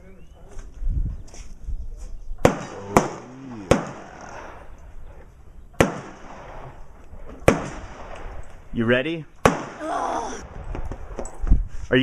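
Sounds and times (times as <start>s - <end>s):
gunshots with echo: 2.4s - 4.2s.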